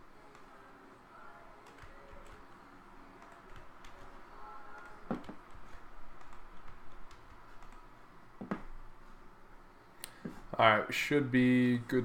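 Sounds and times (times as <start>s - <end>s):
typing on computer keyboard: 1.6s - 2.4s, 3.2s - 7.8s.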